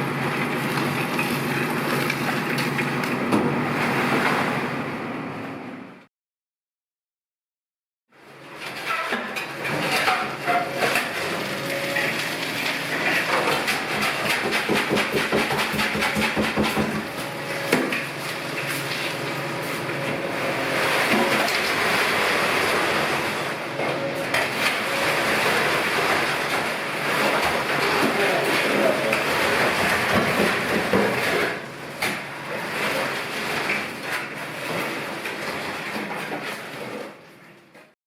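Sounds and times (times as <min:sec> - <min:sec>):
concrete mixer truck rattling: 0:00.1 - 0:05.7, 0:09.2 - 0:37.1.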